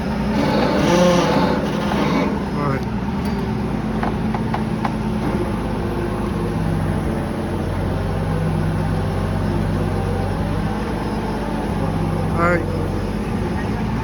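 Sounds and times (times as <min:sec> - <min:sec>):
engine idling: 0:00.0 - 0:14.0.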